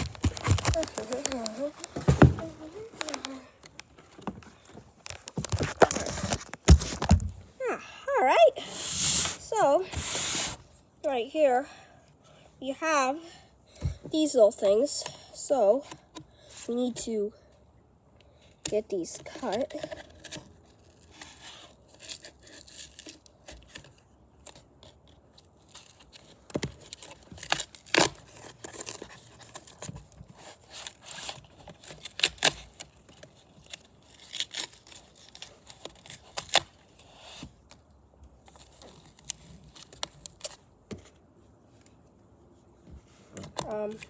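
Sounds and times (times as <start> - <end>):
packing material rustling and tearing: 0.0 - 3.9, 4.9 - 7.4, 19.4 - 37.8, 38.4 - 40.7.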